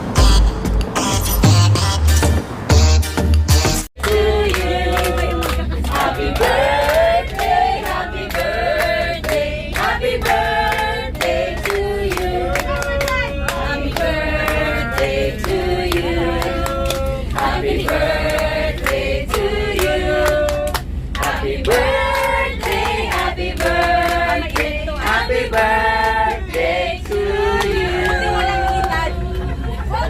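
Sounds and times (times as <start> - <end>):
group of people singing: 4.0 - 30.0
steady low rumble: 4.0 - 30.0.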